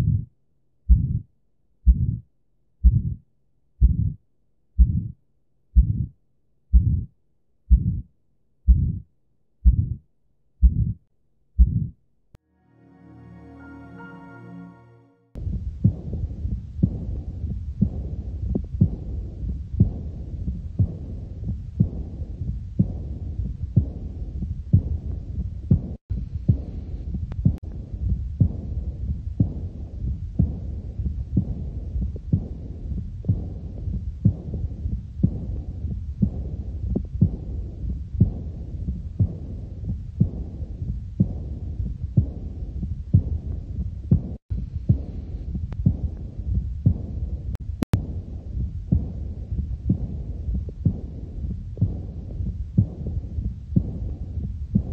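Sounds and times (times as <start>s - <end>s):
heartbeat thuds: 0.0s - 0.3s, 0.9s - 3.2s, 3.8s - 4.2s, 4.8s - 5.2s, 5.8s - 7.1s, 7.7s - 8.1s, 8.7s - 10.0s, 10.6s - 11.0s, 11.6s - 12.0s, 15.4s - 54.9s
steady low rumble: 5.8s - 6.1s, 6.7s - 7.1s, 15.4s - 54.9s.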